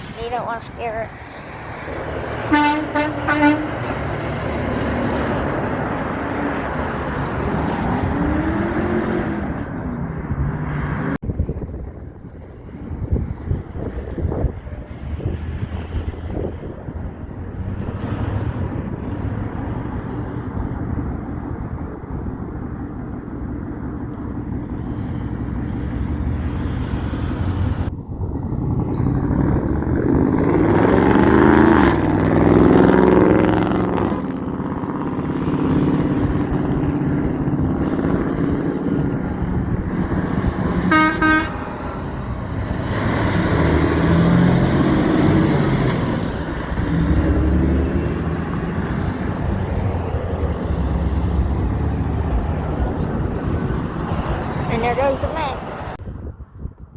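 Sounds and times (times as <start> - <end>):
trucks and traffic driving past: 0.0 - 56.9
vehicle horn toot: 2.5 - 3.9, 40.9 - 42.3.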